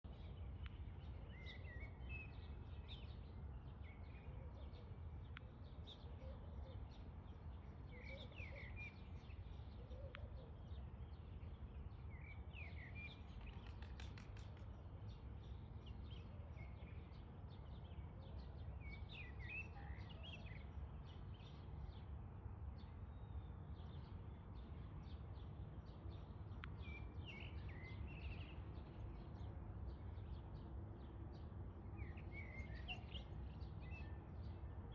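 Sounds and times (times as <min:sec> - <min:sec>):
small birds chirping: 0:22.8 - 0:34.9.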